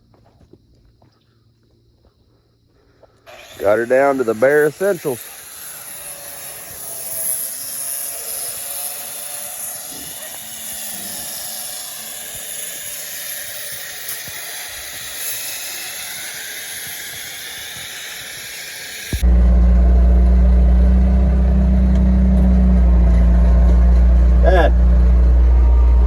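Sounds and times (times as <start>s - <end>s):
high-pitched hiss: 3.1s - 19.2s
loud engine running: 19.0s - 26.0s.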